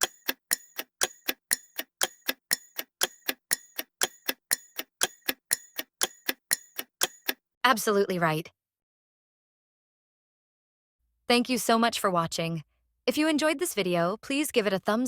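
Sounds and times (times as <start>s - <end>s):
clock ticking: 0.0s - 7.4s.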